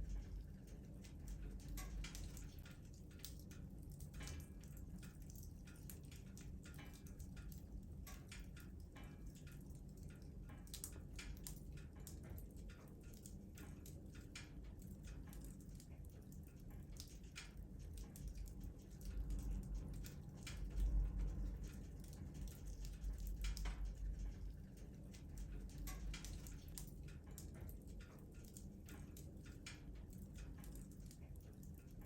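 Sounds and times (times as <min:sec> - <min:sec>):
fire crackling and popping: 0:00.0 - 0:31.9
low steady rumble: 0:00.0 - 0:32.0.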